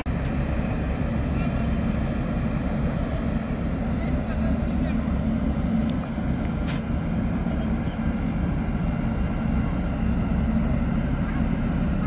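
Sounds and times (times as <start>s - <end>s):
heavy engine rumbling: 0.0s - 12.0s.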